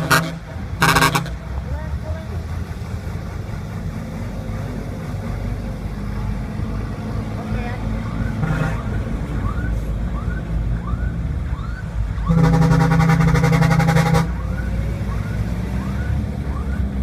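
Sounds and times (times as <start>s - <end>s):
vehicle horn blast: 0.0s - 1.4s, 12.3s - 14.4s
engine idling: 0.0s - 9.8s.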